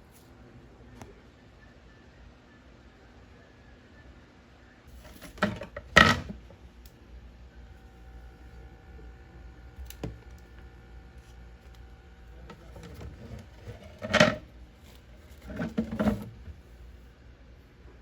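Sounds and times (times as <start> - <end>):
faint steady hum: 0.0 - 18.0
clattering: 12.8 - 14.5, 15.3 - 16.5.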